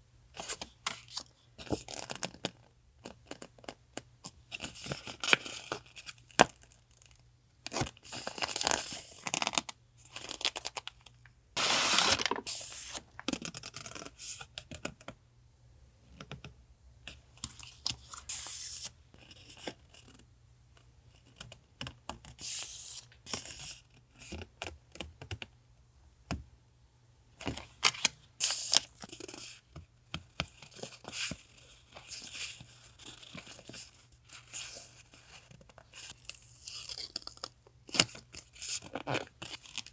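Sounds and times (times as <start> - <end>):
paper tearing and rustling: 11.6 - 13.0.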